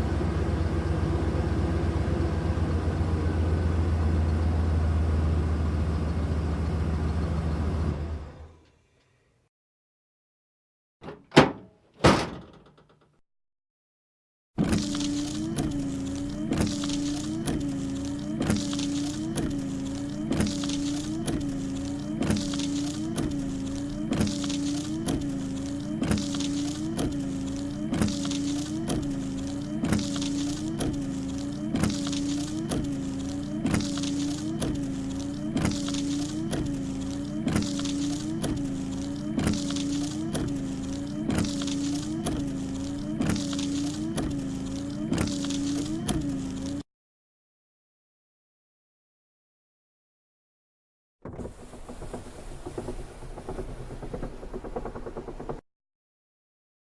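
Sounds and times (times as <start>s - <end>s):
electric motor humming: 14.6s - 46.8s
motor mechanism clicking: 14.6s - 46.8s.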